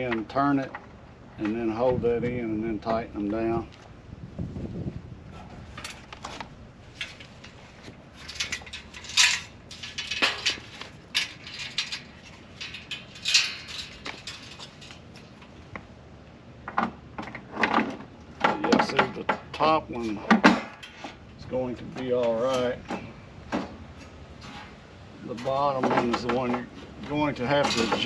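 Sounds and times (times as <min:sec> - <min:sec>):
metal hardware clinking and rattling: 0:06.9 - 0:15.7, 0:22.0 - 0:28.0.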